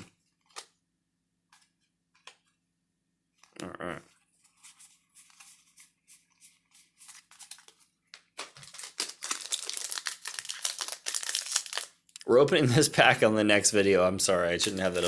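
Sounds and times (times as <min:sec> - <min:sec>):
foil wrapper crinkling and tearing: 0:07.2 - 0:12.2, 0:14.6 - 0:15.0.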